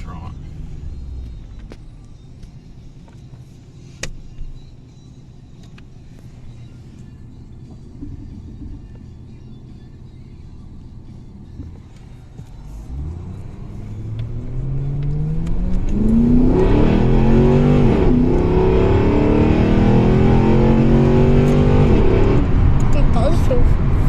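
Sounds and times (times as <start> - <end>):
car engine accelerating hard: 12.5 - 24.0.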